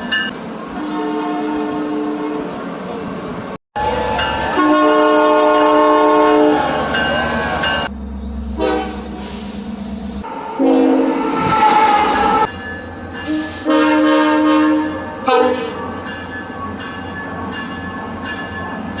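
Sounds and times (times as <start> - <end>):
train rumbling past: 0.0 - 19.0
train air horn blasts: 0.8 - 2.6, 3.8 - 12.5, 13.2 - 15.8.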